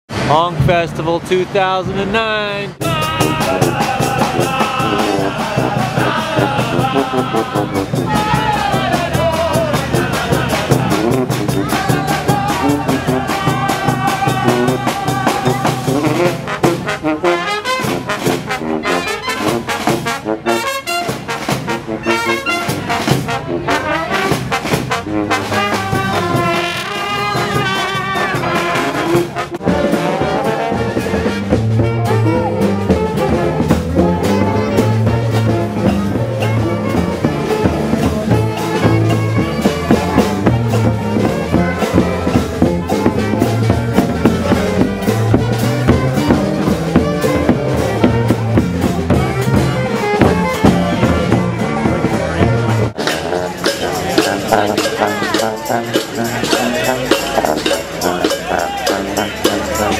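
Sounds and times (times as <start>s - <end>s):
brass band playing: 0.1s - 59.9s
music with heavy repeating bass: 2.8s - 59.9s.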